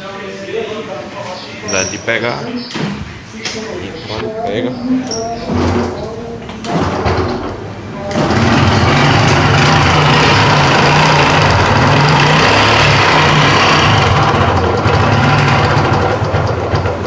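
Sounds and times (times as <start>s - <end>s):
motorcycle engine running noisily: 8.0s - 17.0s.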